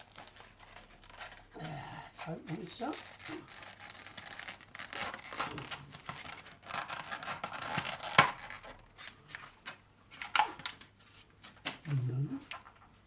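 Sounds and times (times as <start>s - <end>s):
packet crinkling and tearing: 0.0s - 1.5s, 2.5s - 8.8s.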